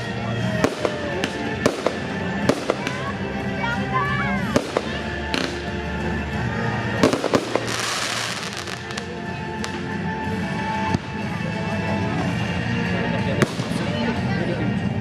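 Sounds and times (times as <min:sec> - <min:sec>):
crackling hiss of fireworks: 0:00.0 - 0:03.1, 0:07.0 - 0:09.9
music: 0:00.0 - 0:15.0
fireworks bursting bangs: 0:00.6 - 0:03.0, 0:04.5 - 0:05.7, 0:07.0 - 0:09.9.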